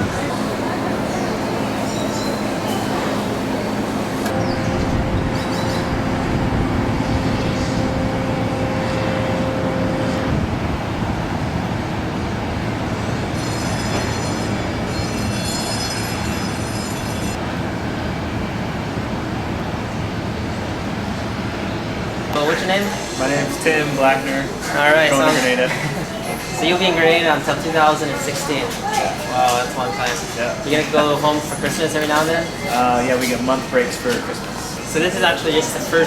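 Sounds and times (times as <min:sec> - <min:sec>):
loud mechanical rumble: 0:00.0 - 0:29.3
constant hum: 0:00.0 - 0:36.0.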